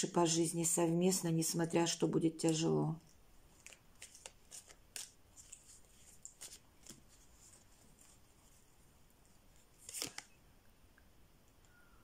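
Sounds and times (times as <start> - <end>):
cards rustling and flicking: 3.5 - 8.6, 9.5 - 10.4.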